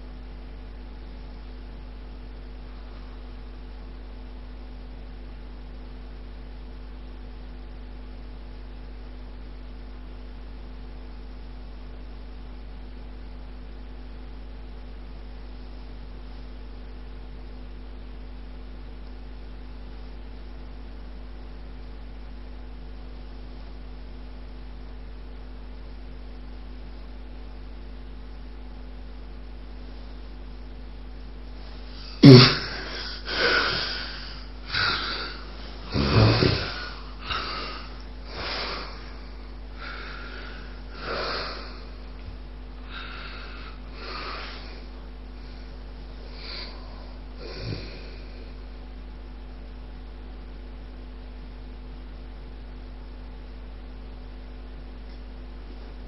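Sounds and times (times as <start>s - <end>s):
low mains hum: 0.0s - 56.0s
even hiss: 31.6s - 42.1s, 42.8s - 45.6s.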